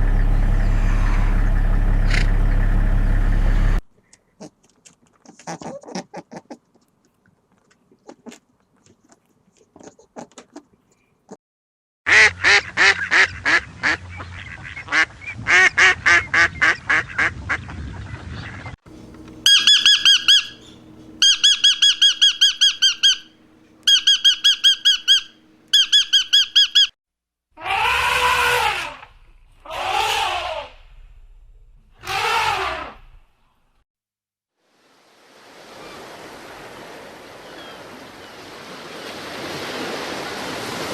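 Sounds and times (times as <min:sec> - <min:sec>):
pulsed squawking calls: 0:00.0 - 0:03.8, 0:18.9 - 0:26.9
rising and falling animal calls: 0:00.0 - 0:03.8, 0:19.0 - 0:26.9, 0:27.6 - 0:30.8, 0:32.0 - 0:33.1
high repeated chirps: 0:19.4 - 0:26.9.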